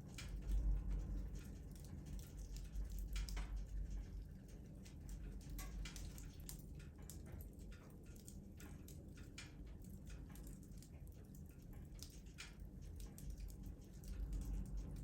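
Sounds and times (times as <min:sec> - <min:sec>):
low rumble of flames: 0:00.0 - 0:15.0
wood fire crackling and popping: 0:04.7 - 0:15.0.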